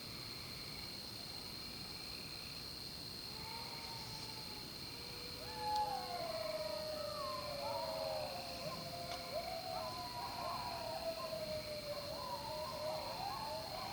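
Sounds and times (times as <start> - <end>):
dogs howling together: 5.0 - 13.9.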